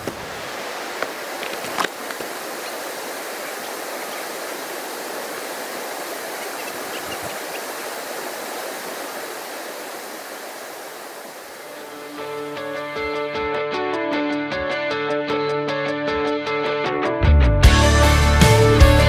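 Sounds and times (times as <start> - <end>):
river water rushing: 0.0 - 13.5.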